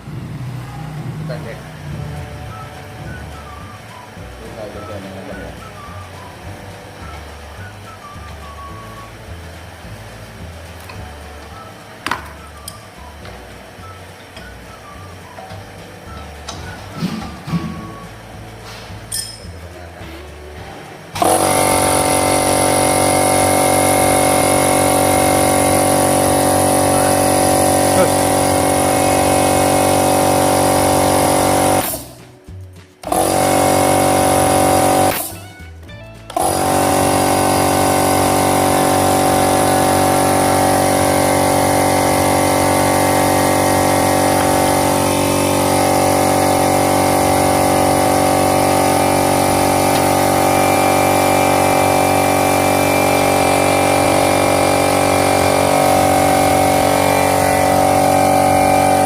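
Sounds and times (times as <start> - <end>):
air compressor motor humming: 0.0 - 59.0.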